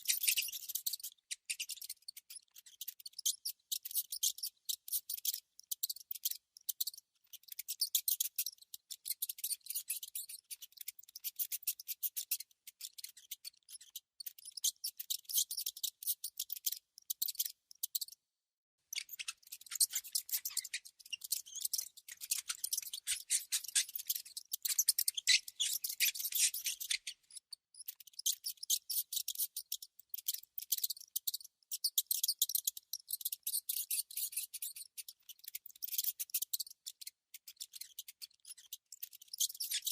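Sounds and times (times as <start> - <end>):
mouse making scratching clicks: 0.0 - 18.2, 18.9 - 39.9.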